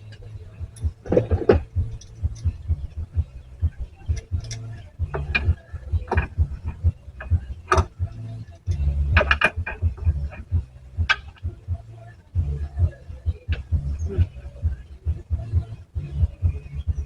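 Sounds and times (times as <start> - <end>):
low rumble: 0.0 - 17.0
metallic clicks and knocks of tools: 4.1 - 6.4, 8.6 - 9.9.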